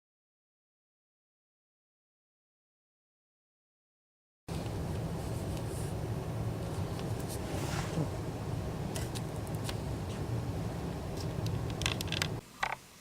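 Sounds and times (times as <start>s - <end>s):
low background hum: 4.5s - 13.0s.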